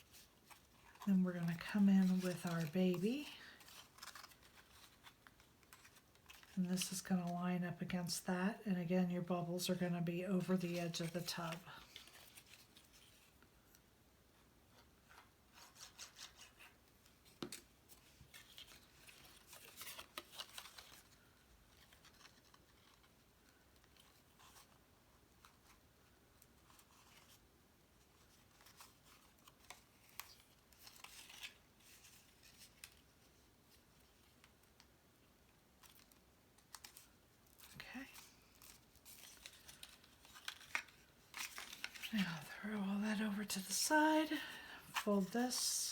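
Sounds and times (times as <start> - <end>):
card pieces rustling and clicking: 2.0 - 6.9, 35.8 - 42.2.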